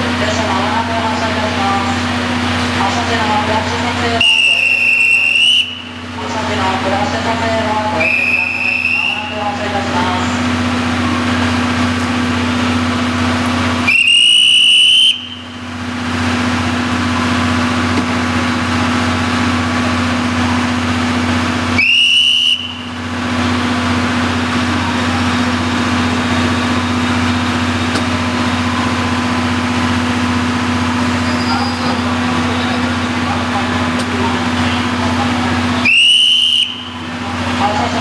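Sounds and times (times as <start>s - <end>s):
locomotive whistle blasts: 4.1s - 6.0s, 7.9s - 9.6s, 13.8s - 15.6s, 21.7s - 23.0s, 24.9s - 30.2s, 31.1s - 32.2s, 35.6s - 37.2s.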